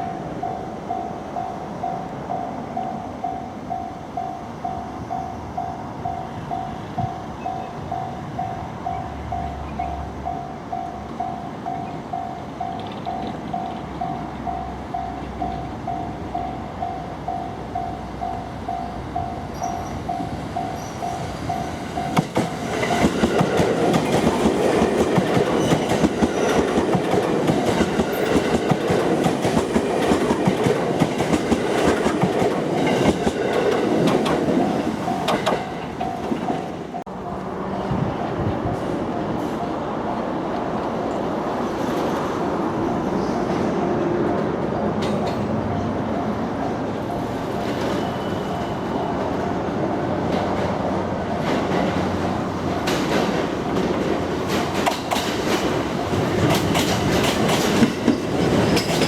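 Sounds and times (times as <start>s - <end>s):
train wheel clatter: 21.0s - 37.0s, 50.2s - 59.0s.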